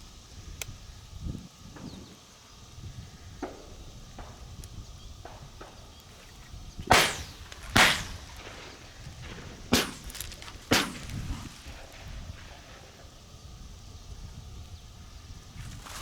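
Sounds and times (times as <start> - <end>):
wind rumbling on microphone: 0.0 - 16.0
shotgun shots: 5.2 - 13.2.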